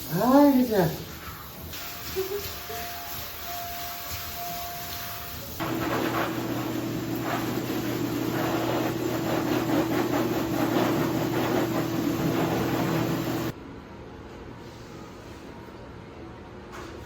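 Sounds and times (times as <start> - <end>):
machine hum: 5.6 - 13.6.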